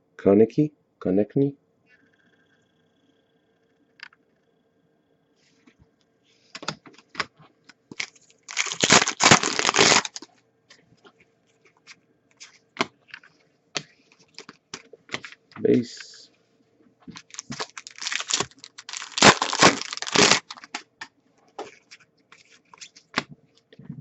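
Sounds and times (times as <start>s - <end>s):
wrapper tearing and crinkling: 7.9s - 10.3s, 17.2s - 20.8s.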